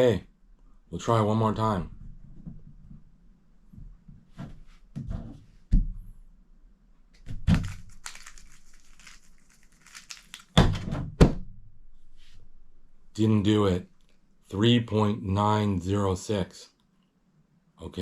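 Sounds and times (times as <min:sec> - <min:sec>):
puzzle cube clicking and rattling: 0:07.6 - 0:10.6.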